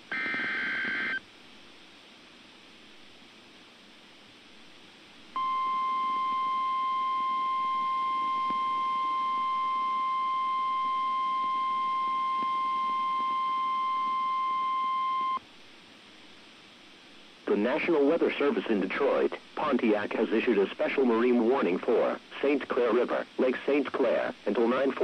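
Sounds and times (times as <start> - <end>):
faint radio hiss: 0.0 - 25.0
steady warning alarm tone: 5.4 - 15.4.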